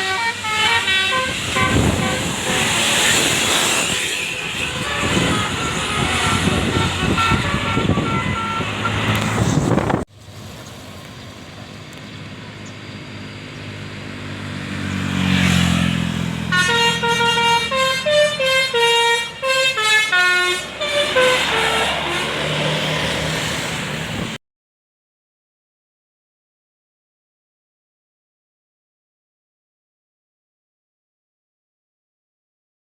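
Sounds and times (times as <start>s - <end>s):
multi-tone air horn melody: 0.0s - 9.6s, 16.4s - 22.7s
bus engine and road noise: 0.0s - 24.4s.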